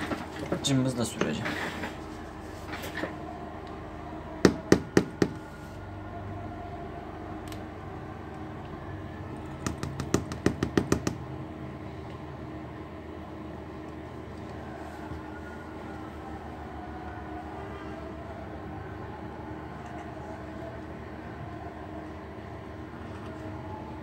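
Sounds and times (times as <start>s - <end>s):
sharp taps on hard material: 9.6s - 11.2s.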